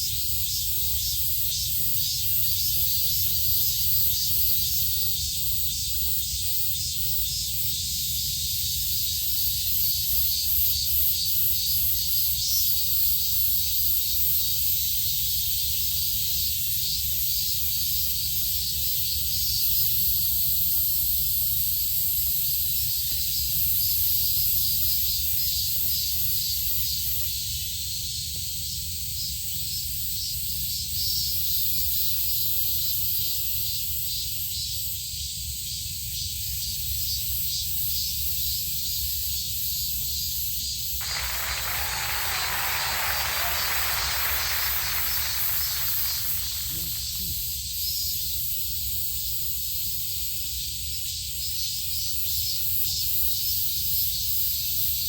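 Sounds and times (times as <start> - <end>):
insects chorus shrill and pulsing: 41.0 - 48.7.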